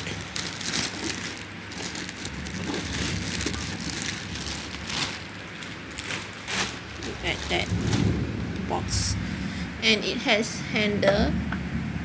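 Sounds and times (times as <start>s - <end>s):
plastic packaging crinkling: 0.0s - 8.8s.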